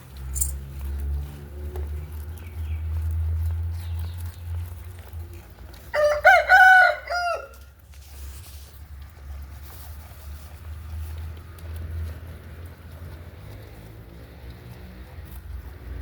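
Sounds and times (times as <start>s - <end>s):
rooster crowing: 5.9s - 7.7s.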